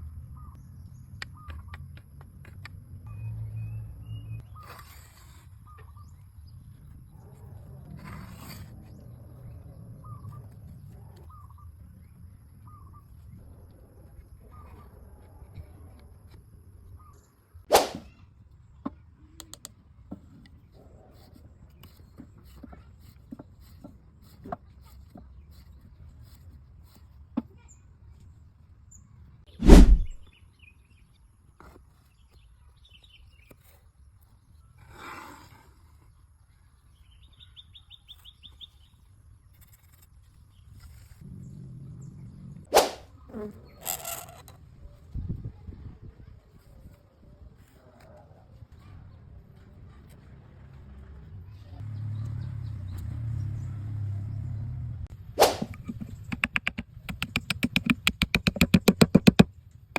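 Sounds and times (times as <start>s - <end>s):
soft scrape or rustle: 4.5s - 5.8s, 7.9s - 9.0s, 29.6s - 30.2s, 39.5s - 41.3s
loud thump: 29.6s - 30.2s.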